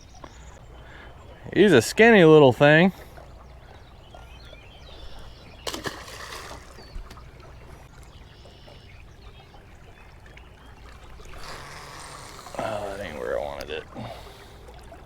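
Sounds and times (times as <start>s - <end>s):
river water trickling: 0.0s - 15.0s
water splash: 5.6s - 7.5s.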